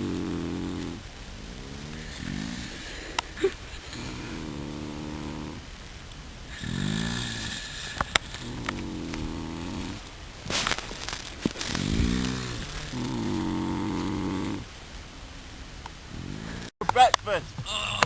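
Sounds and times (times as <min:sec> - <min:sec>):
person snoring: 0:01.7 - 0:02.9, 0:06.5 - 0:10.0.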